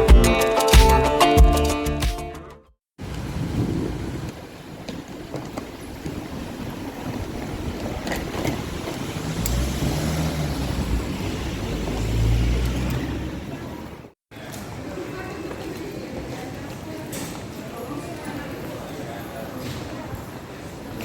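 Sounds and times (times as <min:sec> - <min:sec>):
road noise hiss: 0:03.0 - 0:14.2.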